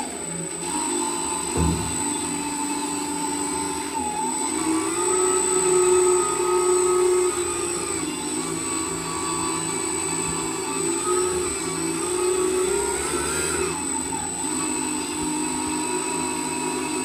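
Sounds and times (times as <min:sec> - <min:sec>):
electric motor propeller whine: 0:00.0 - 0:17.0
low thump: 0:01.5 - 0:02.2.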